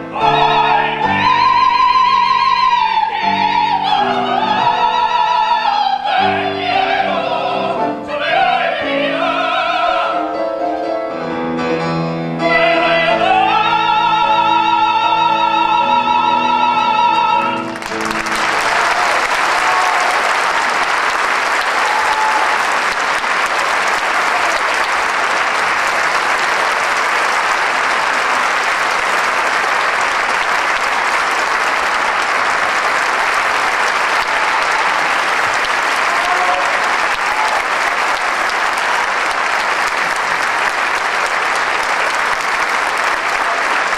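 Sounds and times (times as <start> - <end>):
audience applause: 17.0 - 43.9.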